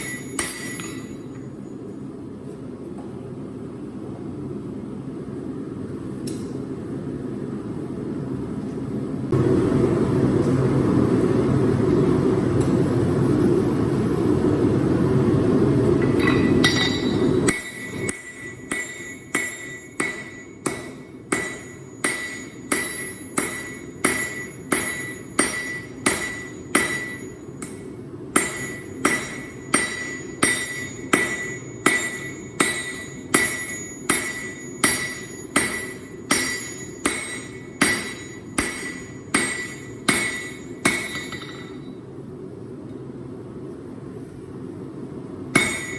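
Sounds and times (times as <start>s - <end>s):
hammer ringing on anvil: 0.0s - 1.8s, 16.0s - 42.0s, 45.6s - 45.9s.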